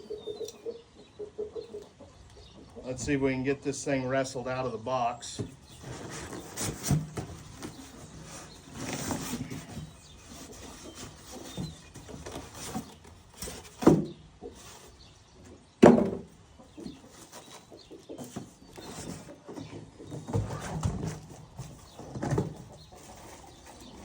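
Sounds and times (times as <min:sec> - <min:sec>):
cardboard rustling and scraping: 0:05.4 - 0:15.0, 0:16.8 - 0:24.0.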